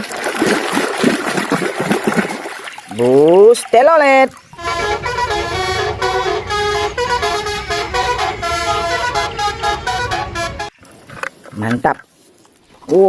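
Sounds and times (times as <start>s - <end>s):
multi-tone bus horn tune: 4.6s - 10.8s.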